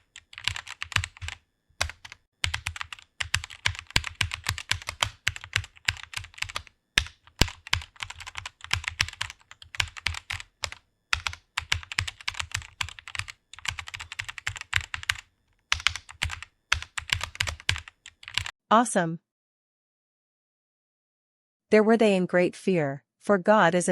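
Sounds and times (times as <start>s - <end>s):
typing on computer keyboard: 0.0s - 18.5s.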